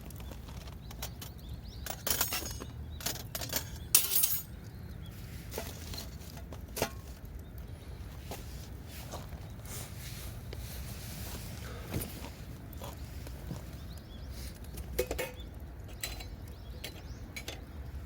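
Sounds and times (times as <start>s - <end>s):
small hard objects clinking: 0.0s - 7.6s.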